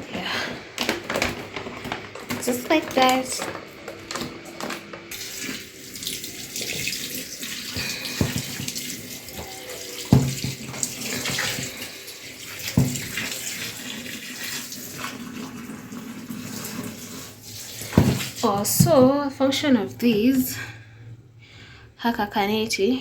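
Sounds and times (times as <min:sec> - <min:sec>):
water running from a hose: 0:05.1 - 0:19.0.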